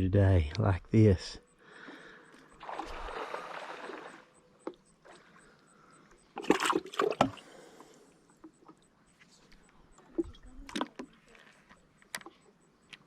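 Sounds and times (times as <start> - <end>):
water sloshing and splashing: 2.5 - 5.5, 6.3 - 7.6.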